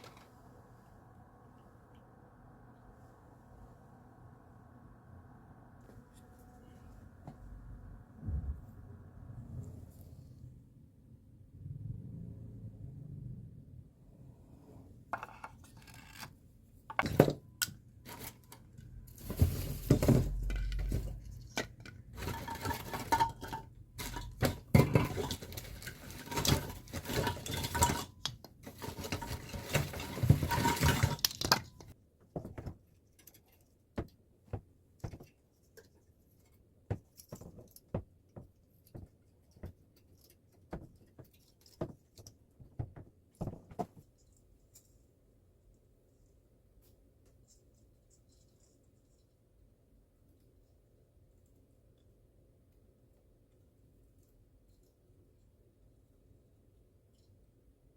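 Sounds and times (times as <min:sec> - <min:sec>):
hard objects clattering and clinking: 0:15.1 - 0:34.1.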